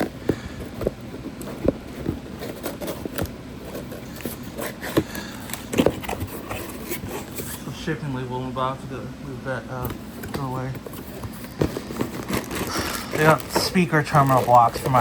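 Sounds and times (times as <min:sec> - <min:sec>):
cardboard box being opened: 0:11.0 - 0:15.0.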